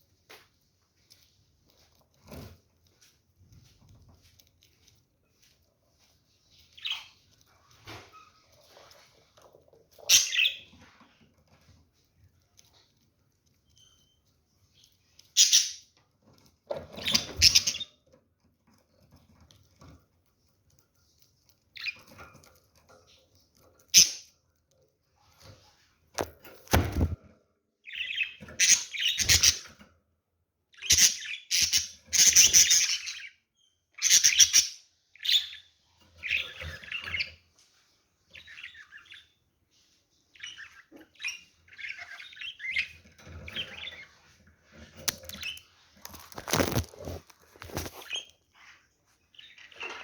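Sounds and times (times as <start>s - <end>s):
budgerigars chirping and chattering: 4.2s - 9.4s, 10.0s - 11.1s, 13.7s - 16.0s, 16.8s - 18.0s, 23.9s - 24.3s, 27.9s - 29.8s, 30.8s - 37.4s, 38.3s - 46.9s, 47.7s - 50.0s.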